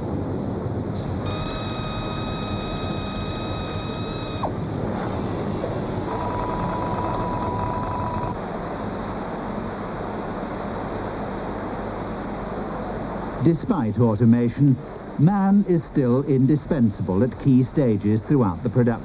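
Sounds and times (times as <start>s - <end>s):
high mechanical whines: 0.9s - 8.5s
production line machinery running: 1.0s - 8.4s.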